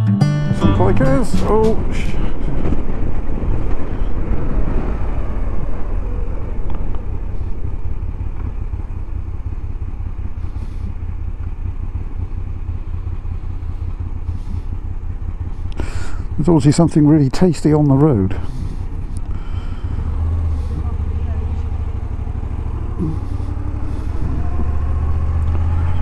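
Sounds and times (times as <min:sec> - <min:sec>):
motorcycle engine running: 0:00.0 - 0:26.0
wind rumble on microphone: 0:00.8 - 0:11.0, 0:18.4 - 0:26.0.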